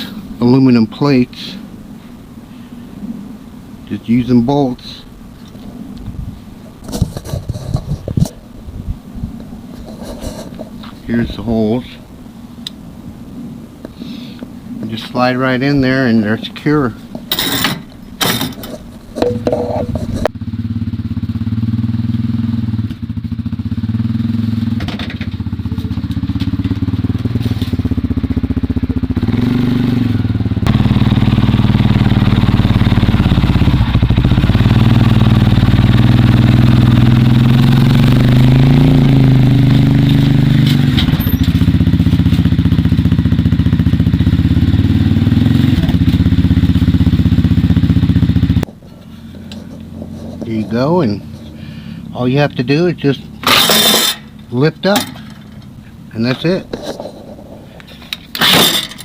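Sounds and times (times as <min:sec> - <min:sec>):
atv engine revving: 0:19.2 - 0:56.6
metal clanks: 0:53.4 - 0:55.7, 0:58.1 - 0:59.0.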